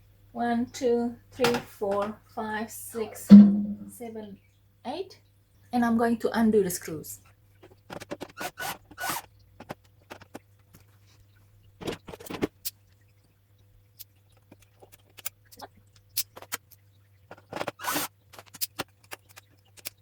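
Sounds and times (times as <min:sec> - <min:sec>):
screws scraping: 0:07.9 - 0:09.3, 0:17.4 - 0:18.8.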